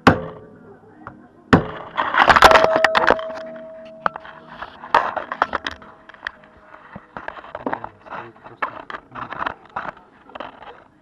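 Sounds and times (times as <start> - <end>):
sharp metal knocks: 0.0 - 0.5, 1.6 - 5.9
steel parts and tools clattering: 2.0 - 6.4
ringing metal tone: 2.4 - 6.3.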